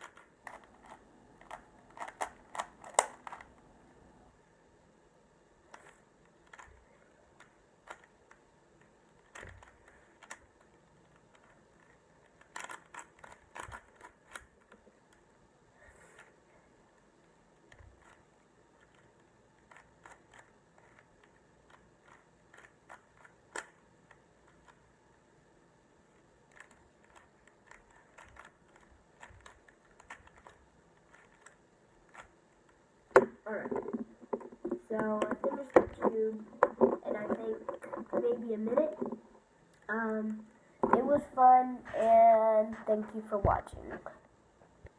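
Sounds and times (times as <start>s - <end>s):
puzzle cube plastic clicks: 0.0s - 3.6s, 5.7s - 15.3s, 17.0s - 25.0s, 26.1s - 39.9s.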